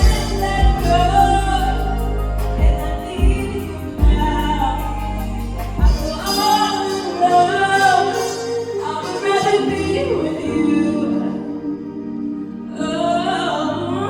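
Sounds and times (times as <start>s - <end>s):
heavy bass and kick drum: 0.0s - 6.3s
live band music: 0.0s - 12.6s
person singing: 0.0s - 14.0s.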